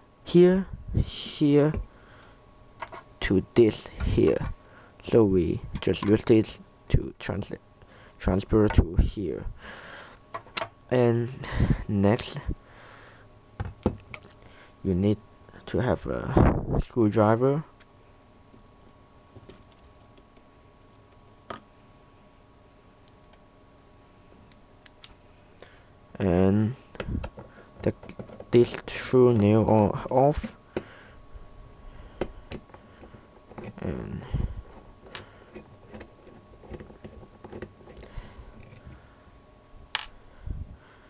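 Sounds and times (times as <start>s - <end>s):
faint steady hum: 0.0s - 41.0s
hard drive being handled: 34.8s - 38.0s.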